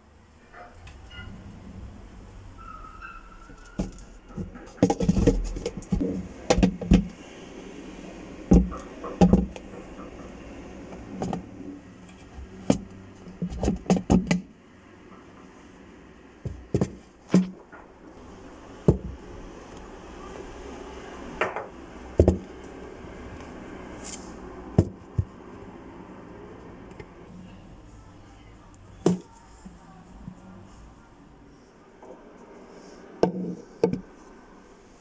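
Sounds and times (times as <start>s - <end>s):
knocks and clatters: 3.6s - 7.2s, 8.5s - 14.5s.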